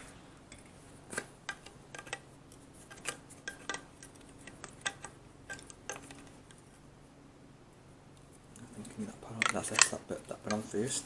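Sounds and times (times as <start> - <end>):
plastic attachments clicking: 8.8 - 10.7.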